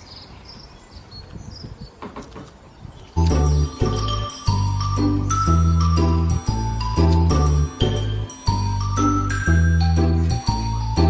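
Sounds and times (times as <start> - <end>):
upbeat background music: 3.2 - 11.0.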